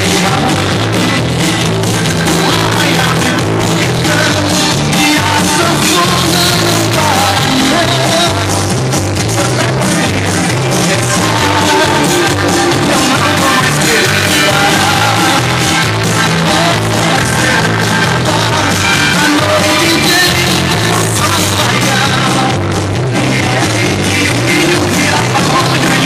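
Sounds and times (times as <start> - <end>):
heavy bass line: 0.0 - 26.0
song with singing on car stereo: 0.0 - 26.0.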